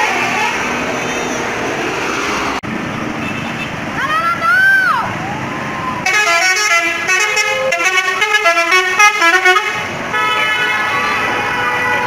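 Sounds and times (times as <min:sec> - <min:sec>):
musical bus horn tune: 0:06.0 - 0:12.0.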